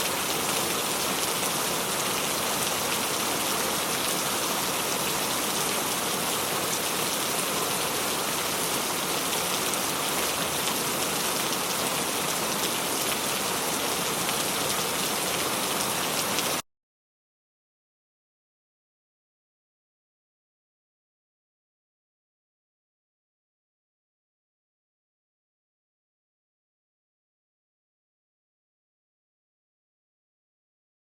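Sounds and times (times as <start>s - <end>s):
steady rain falling: 0.0s - 16.6s.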